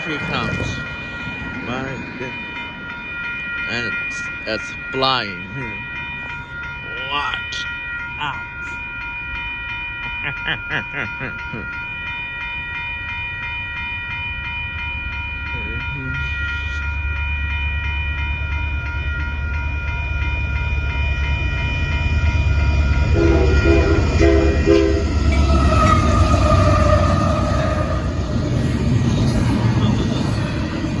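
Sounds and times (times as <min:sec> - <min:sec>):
train rumble: 0:00.0 - 0:31.0
locomotive horn chord: 0:23.1 - 0:28.5.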